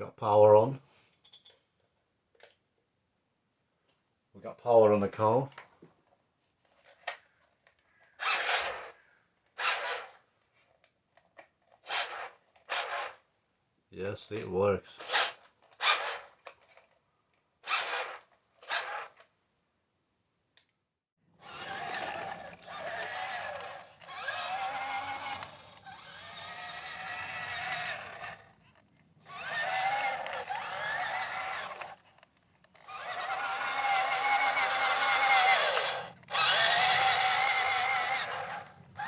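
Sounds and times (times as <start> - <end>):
toy car electric motor whining: 6.8 - 10.2, 11.7 - 13.2, 15.0 - 16.9, 17.6 - 19.3, 21.4 - 39.0.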